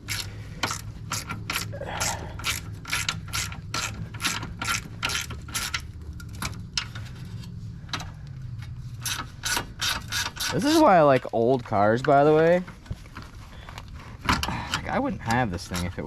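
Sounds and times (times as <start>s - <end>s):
ratchet wrench clicking: 0.0s - 5.9s, 9.0s - 10.8s.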